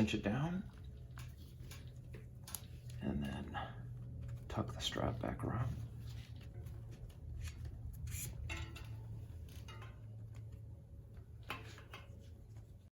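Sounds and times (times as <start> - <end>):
steady low hum: 0.0 - 12.9
strap scraping: 0.8 - 10.6.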